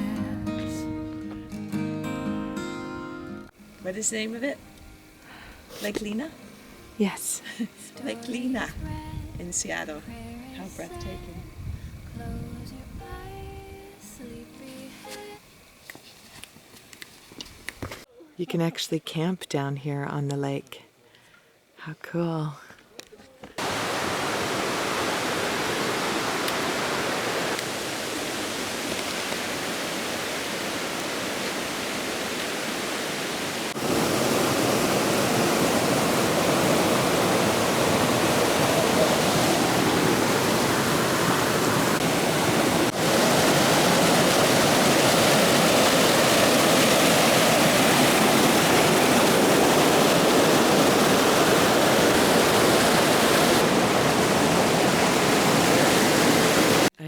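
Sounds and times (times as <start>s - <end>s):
rushing water: 23.6s - 57.0s.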